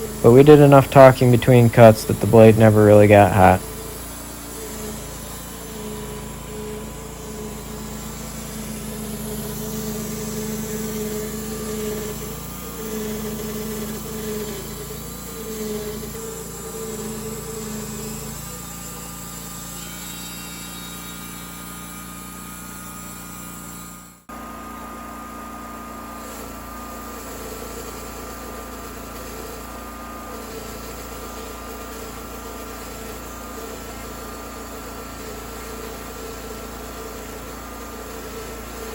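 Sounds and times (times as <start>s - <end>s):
bandsaw blade cutting log: 0.0s - 38.9s
sawmill engine running: 0.0s - 38.9s.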